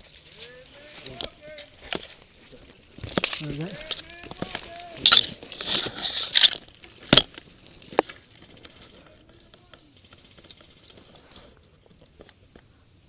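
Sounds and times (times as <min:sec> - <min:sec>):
sharp cracks: 0:03.0 - 0:11.2.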